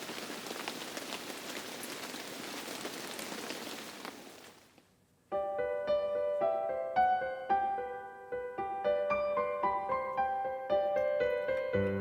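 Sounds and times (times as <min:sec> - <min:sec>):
rain pattering: 0:00.0 - 0:04.9
piano music: 0:05.3 - 0:12.0.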